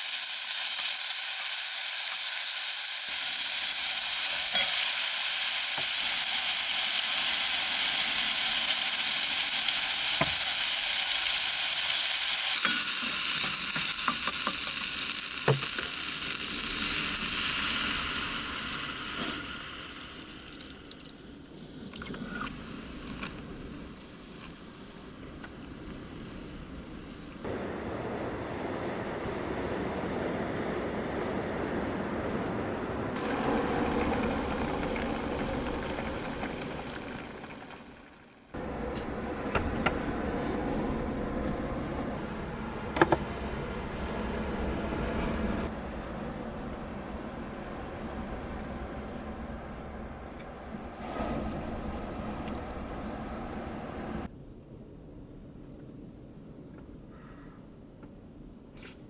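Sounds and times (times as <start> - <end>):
food sizzling in a pan: 0.0 - 21.4, 22.3 - 27.5, 33.2 - 38.3
utensils clicking and knocking: 10.0 - 16.9
low steady hum: 38.6 - 54.8.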